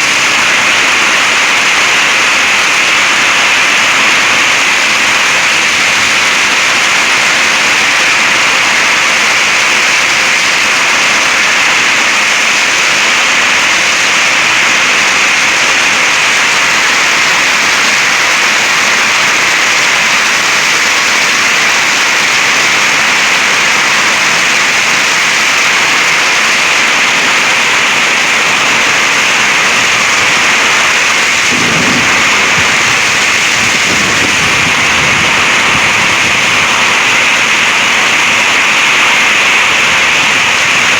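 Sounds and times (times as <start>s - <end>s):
heavy rain downpour: 0.0s - 40.9s
strong wind rush: 27.8s - 40.9s.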